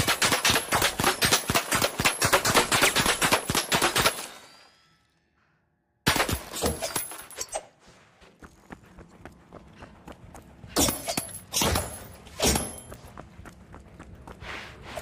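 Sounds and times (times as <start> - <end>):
sword blades clashing: 10.8 - 12.9.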